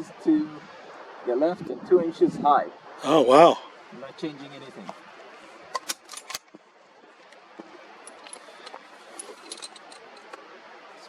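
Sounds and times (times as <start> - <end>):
low steady hiss: 0.0 - 11.0
light metallic ticks and clinks: 8.0 - 10.4.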